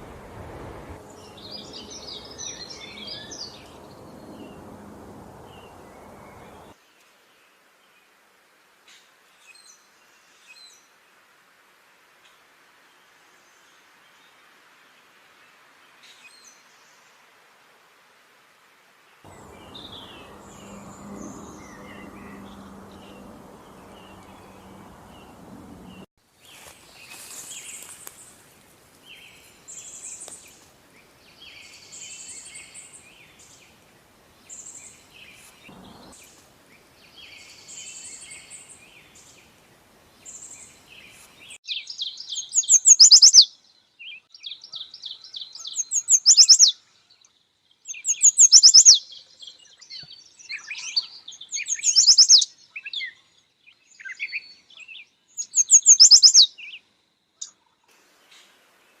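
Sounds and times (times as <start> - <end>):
low hum: 0.0 - 6.7, 19.3 - 26.1, 35.7 - 36.3
rapid trilling birdsong: 0.0 - 6.8, 19.3 - 26.1, 35.7 - 36.4, 41.7 - 43.4, 44.5 - 46.7, 47.9 - 53.2, 54.0 - 56.7
songbirds singing: 0.0 - 6.8, 19.3 - 28.4, 29.0 - 59.0.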